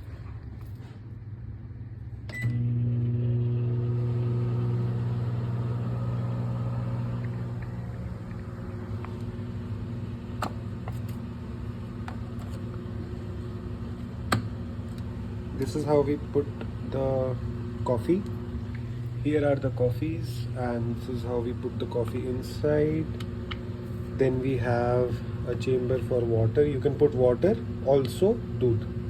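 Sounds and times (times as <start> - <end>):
low electrical hum: 0.0 - 29.0
appliance switch click: 14.2 - 14.6.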